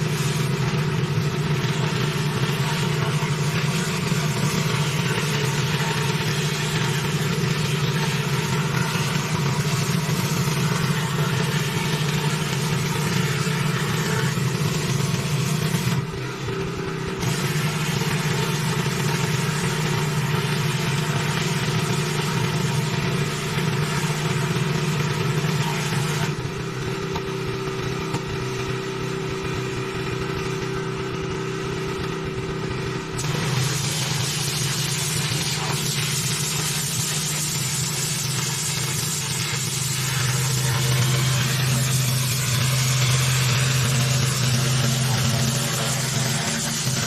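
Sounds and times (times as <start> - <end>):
water spray hissing: 0.0 - 16.0, 17.2 - 24.4, 33.2 - 47.0
pressure washer engine hum: 0.0 - 47.0.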